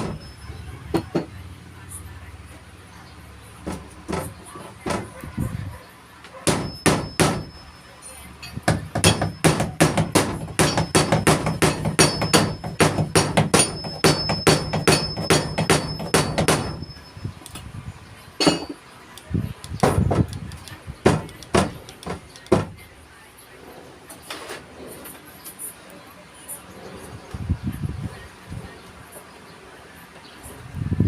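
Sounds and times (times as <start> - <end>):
hammer driving nails into wood: 6.5 - 7.5, 8.7 - 16.8, 21.0 - 22.8.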